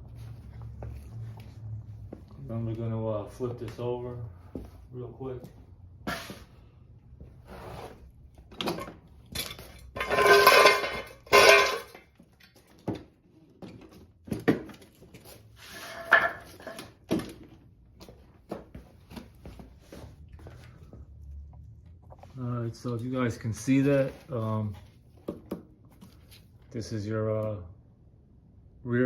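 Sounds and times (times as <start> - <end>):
lawnmower parts clanking: 8.5 - 13.0.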